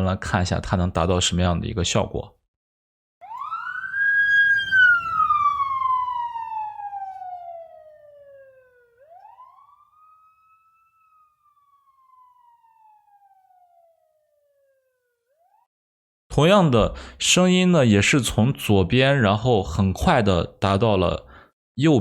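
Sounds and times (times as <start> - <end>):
police siren wailing: 3.2 - 15.7.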